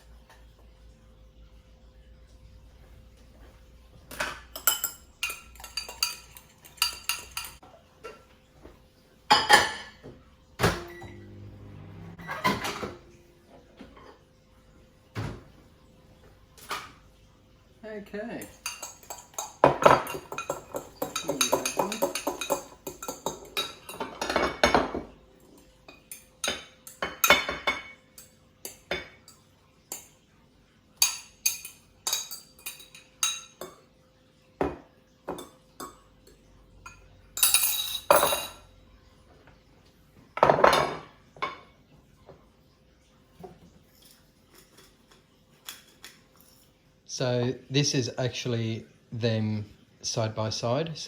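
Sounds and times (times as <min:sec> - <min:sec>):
cutlery clinking and scraping dishes: 0:04.1 - 0:08.3, 0:09.3 - 0:11.0, 0:18.4 - 0:30.2, 0:31.0 - 0:33.9, 0:34.6 - 0:38.7, 0:40.4 - 0:41.8, 0:43.4 - 0:46.8.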